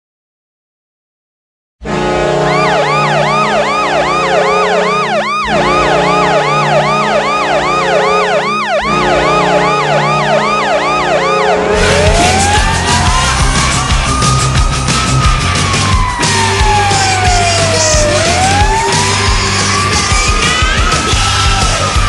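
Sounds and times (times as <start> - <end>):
deep goal horn blasts: 1.8 - 13.6
wailing siren: 1.9 - 22.0
music with heavy beat: 11.7 - 22.0.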